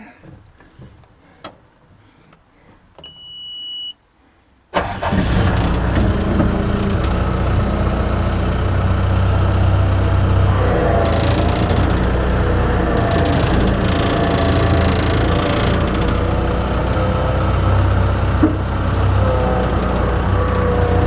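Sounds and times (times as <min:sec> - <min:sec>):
high-pitched warning beep: 0:03.0 - 0:04.0
engine starting and running: 0:04.7 - 0:21.0.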